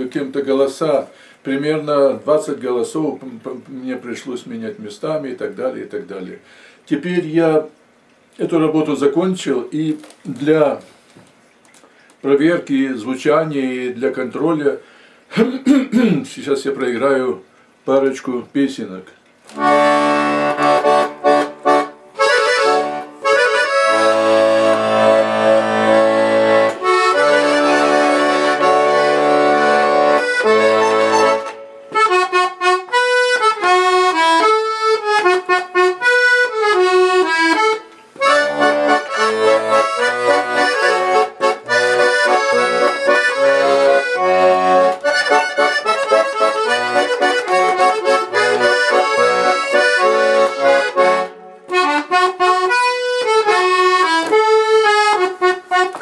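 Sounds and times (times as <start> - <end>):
button accordion playing folk tune: 19.5 - 56.0.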